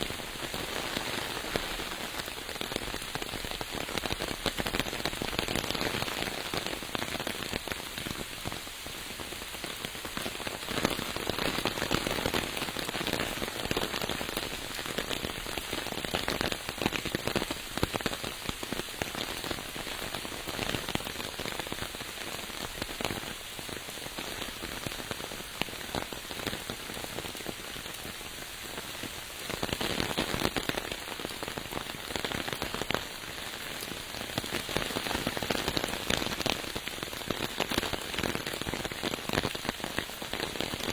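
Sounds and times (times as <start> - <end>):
steady rain falling: 0.0 - 40.9.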